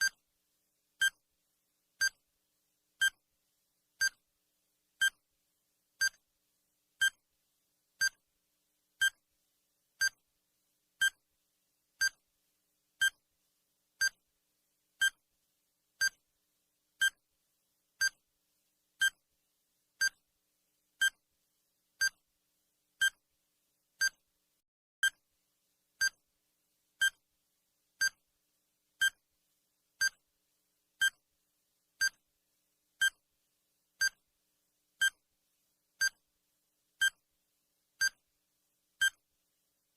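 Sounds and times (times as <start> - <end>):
electronic timer ticks: 1.0 - 1.2, 2.0 - 2.2, 3.0 - 3.2, 4.0 - 4.2, 5.0 - 5.2, 6.0 - 6.2, 7.0 - 7.2, 8.0 - 8.2, 9.0 - 9.2, 10.0 - 10.2, 11.0 - 11.2, 12.0 - 12.2, 13.0 - 13.2, 14.0 - 14.2, 15.0 - 15.2, 16.0 - 16.2, 17.0 - 17.2, 18.0 - 18.2, 19.0 - 19.2, 20.0 - 20.2, 21.0 - 21.2, 22.0 - 22.2, 23.0 - 23.2, 24.0 - 24.2, 26.0 - 26.2, 27.0 - 27.2, 28.0 - 28.2, 29.0 - 29.2, 30.0 - 30.2, 31.0 - 31.2, 32.0 - 32.2, 33.0 - 33.2, 34.0 - 34.2, 35.0 - 35.2, 36.0 - 36.2, 37.0 - 37.2, 38.0 - 38.2, 39.0 - 39.2.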